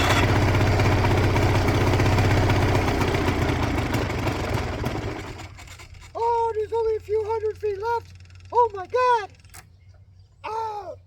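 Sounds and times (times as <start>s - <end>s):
two-stroke aircraft engine running: 0.0s - 6.2s.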